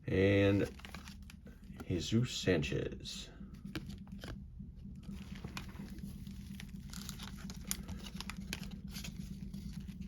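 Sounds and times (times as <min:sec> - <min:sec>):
trading cards being handled: 0:00.5 - 0:02.0, 0:03.6 - 0:04.4, 0:05.0 - 0:10.0.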